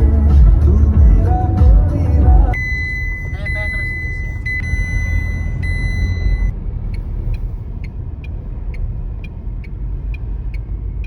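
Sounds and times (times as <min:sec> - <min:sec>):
high electronic tone: 0:00.0 - 0:06.5
car cabin rumble: 0:00.0 - 0:11.0
turn signal ticking: 0:00.0 - 0:11.0.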